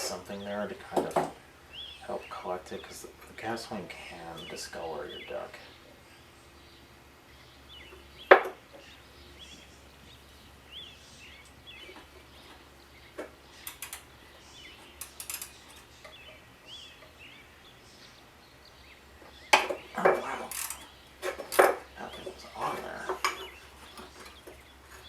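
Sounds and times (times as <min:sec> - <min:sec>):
birds chirping: 0:00.0 - 0:25.0
small clicks: 0:13.2 - 0:14.1.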